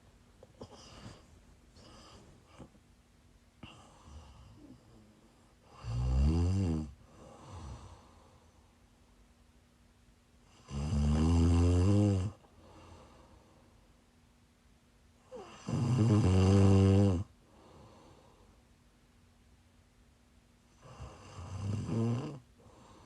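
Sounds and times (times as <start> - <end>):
quiet breathing: 0.0 - 3.0, 3.6 - 6.1, 6.9 - 9.1, 12.2 - 14.1, 17.1 - 18.9, 20.7 - 23.0
woman snoring: 5.7 - 8.0, 10.6 - 12.4, 15.3 - 17.3, 20.8 - 22.5.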